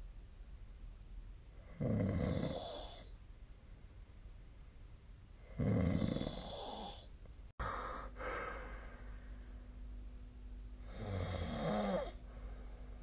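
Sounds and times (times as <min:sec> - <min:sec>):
person snoring: 0:01.6 - 0:03.1, 0:05.5 - 0:09.0, 0:10.8 - 0:12.2.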